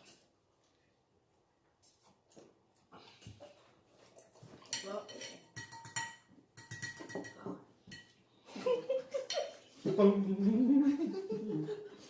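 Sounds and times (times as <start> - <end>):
cutlery and dishes clinking: 4.2 - 8.2, 9.1 - 9.6
person humming mmm: 9.9 - 11.7.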